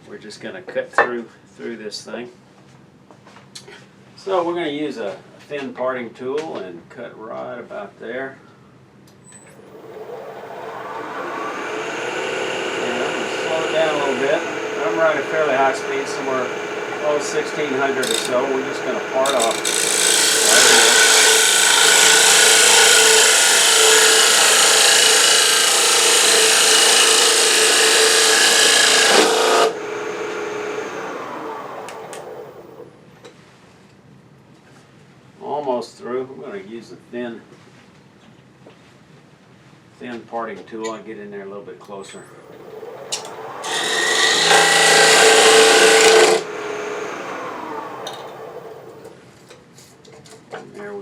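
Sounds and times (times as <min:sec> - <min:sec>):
lathe tool scraping wood: 0:09.6 - 0:32.9, 0:42.5 - 0:49.2.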